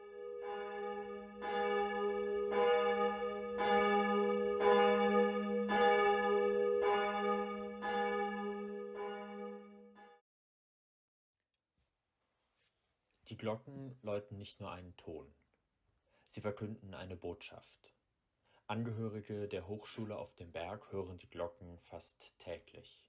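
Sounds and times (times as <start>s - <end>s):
church bell ringing: 0.0s - 10.2s.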